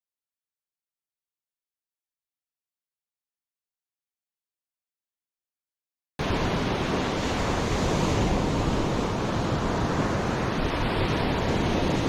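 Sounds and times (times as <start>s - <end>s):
sea waves washing: 6.2s - 12.0s.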